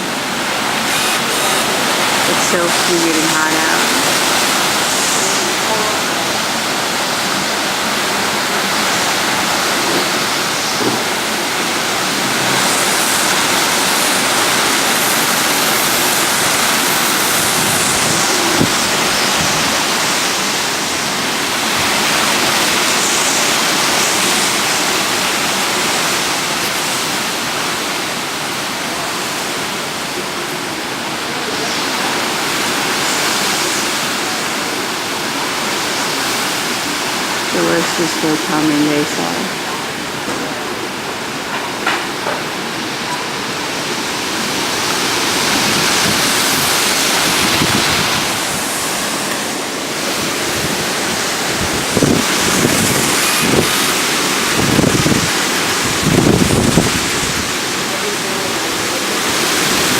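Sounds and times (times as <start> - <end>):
heavy rain: 0.0 - 59.9
hurricane wind: 0.0 - 59.9.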